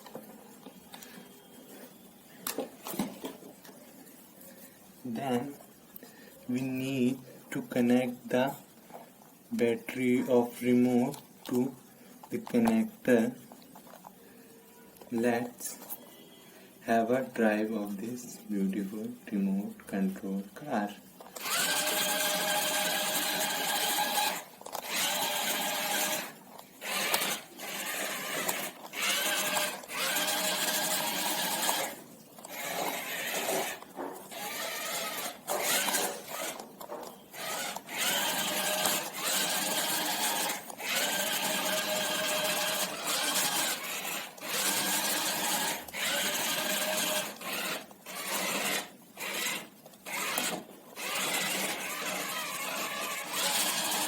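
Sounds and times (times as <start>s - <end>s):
small electric motors whining: 21.3s - 54.0s.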